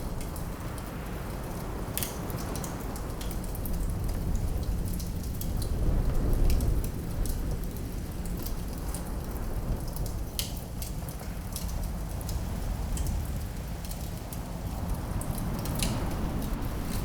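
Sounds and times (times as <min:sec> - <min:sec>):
wood fire crackling and popping: 0:13.8 - 0:17.0
low rumble: 0:15.4 - 0:17.0.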